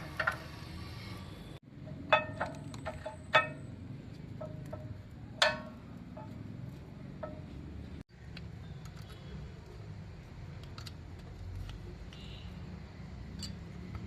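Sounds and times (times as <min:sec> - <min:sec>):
metallic clinks and taps: 0:01.9 - 0:03.7, 0:04.3 - 0:06.4.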